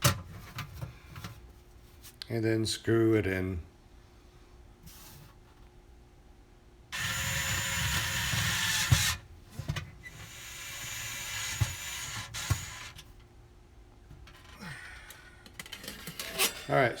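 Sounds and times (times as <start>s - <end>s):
electric screwdriver driving screws: 7.0s - 9.2s, 10.1s - 13.0s.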